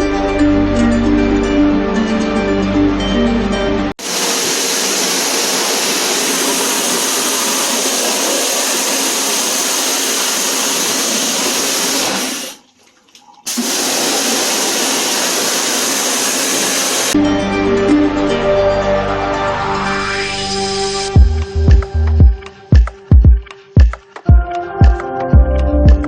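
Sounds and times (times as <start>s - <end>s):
high-pressure water spray hissing: 4.0s - 12.6s, 13.5s - 17.2s.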